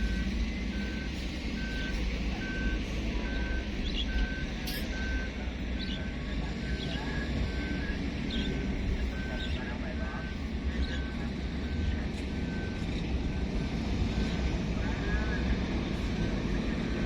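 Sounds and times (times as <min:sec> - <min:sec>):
travel alarm beeping: 0:00.0 - 0:11.8
excavator diesel engine rumbling: 0:00.0 - 0:17.0.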